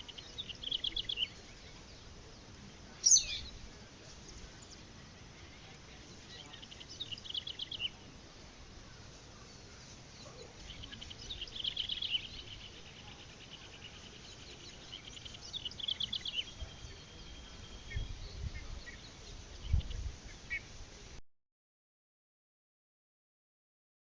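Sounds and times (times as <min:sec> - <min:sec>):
steady outdoor hiss: 0:00.0 - 0:21.2.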